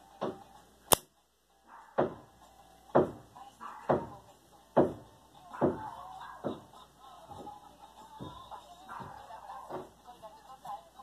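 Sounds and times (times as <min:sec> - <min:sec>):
lighter lid clicking open and shut: 0:00.9 - 0:01.1.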